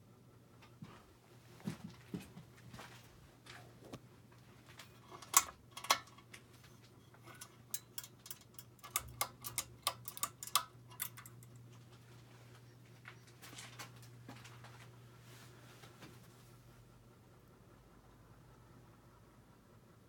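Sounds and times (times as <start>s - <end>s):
ceiling fan humming: 0.0s - 20.0s
sharp clicks and ticks: 7.4s - 11.7s.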